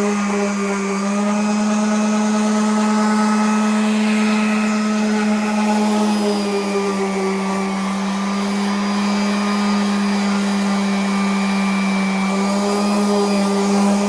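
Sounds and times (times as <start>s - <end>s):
electric sander running: 0.0s - 14.0s.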